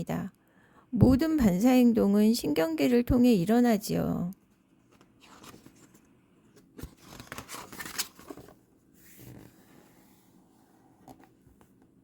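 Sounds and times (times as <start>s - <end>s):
paper page rustling: 4.9s - 9.6s.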